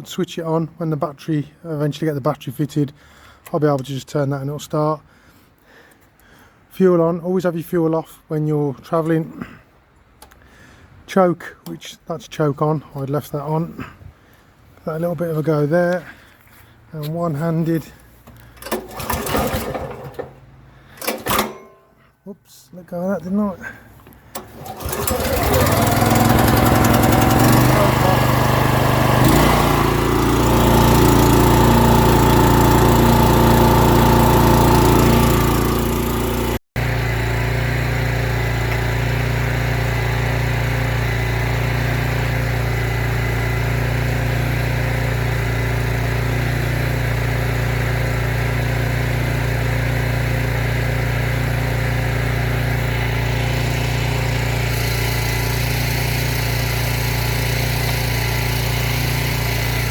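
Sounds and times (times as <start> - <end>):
petrol engine running: 18.3 - 21.6, 24.3 - 59.9.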